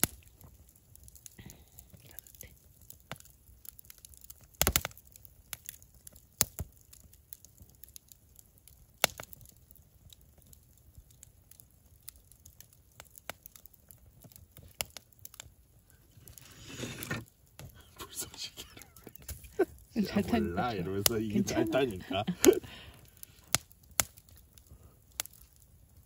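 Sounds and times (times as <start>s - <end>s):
campfire wood crackling and popping: 0.0s - 26.0s.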